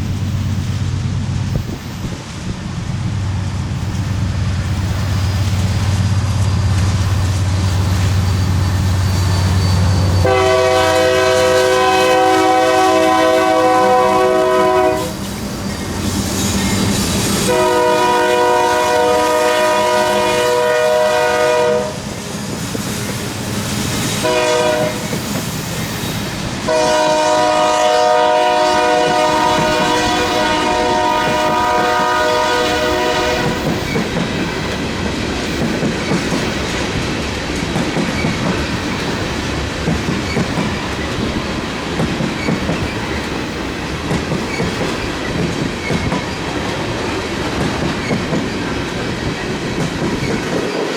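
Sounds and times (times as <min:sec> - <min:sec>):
train wheels clattering: 0:03.8 - 0:50.9
locomotive air horn: 0:10.1 - 0:15.2, 0:17.4 - 0:22.1, 0:24.1 - 0:25.3, 0:26.2 - 0:33.9.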